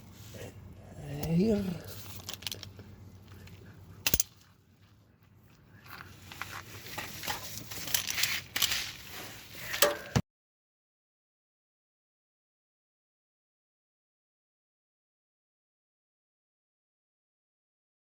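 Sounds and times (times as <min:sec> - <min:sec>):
rustling and scraping: 0:01.3 - 0:10.2
tool clicks: 0:04.1 - 0:04.4.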